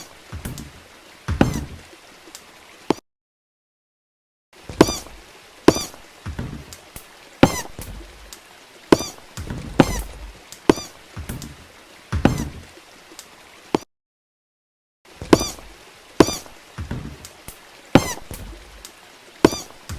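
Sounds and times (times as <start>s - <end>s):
hard footsteps: 4.7s - 12.7s, 15.3s - 17.2s.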